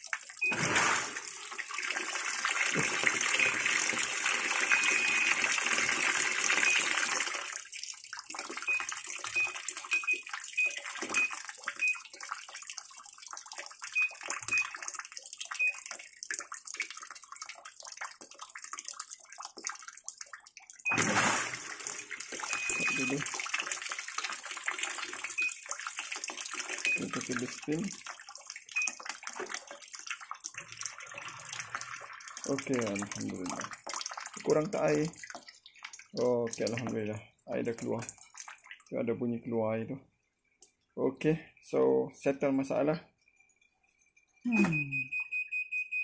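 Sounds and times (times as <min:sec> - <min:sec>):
washing machine draining water: 0:00.0 - 0:39.0
water trickling and splashing: 0:00.0 - 0:39.0
short high beeps: 0:04.7 - 0:05.4, 0:22.5 - 0:23.2, 0:44.5 - 0:46.0.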